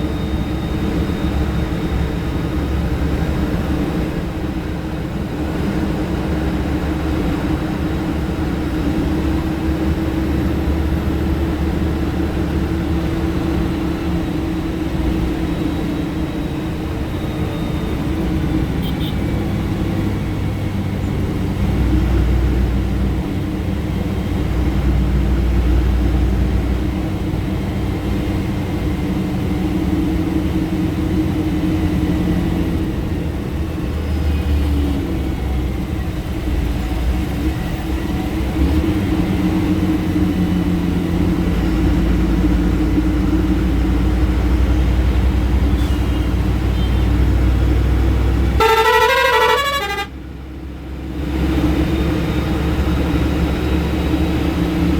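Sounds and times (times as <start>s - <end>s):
bus diesel engine drone: 0.0s - 54.9s
horn with changing notes: 48.6s - 50.2s.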